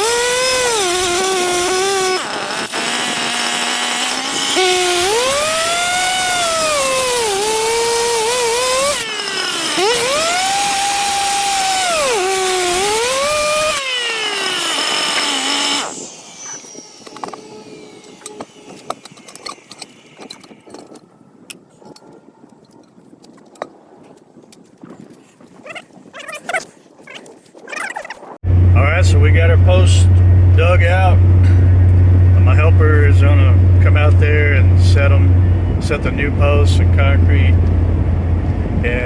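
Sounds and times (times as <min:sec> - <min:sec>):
power tool motor whining: 0:00.0 - 0:21.1.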